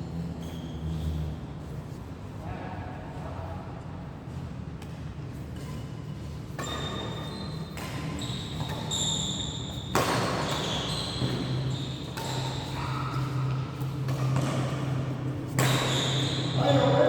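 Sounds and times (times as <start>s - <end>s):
shoes squeaking on court floor: 0.2s - 1.8s, 5.3s - 17.0s.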